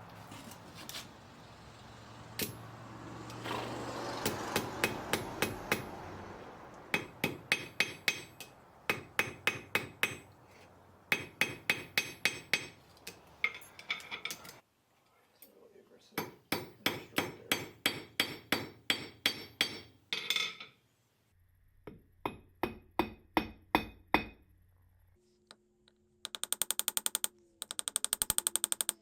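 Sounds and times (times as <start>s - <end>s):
hammer striking metal on anvil: 2.4s - 2.6s, 4.2s - 5.9s, 6.9s - 10.3s, 11.1s - 12.8s, 16.2s - 20.7s, 21.9s - 24.4s.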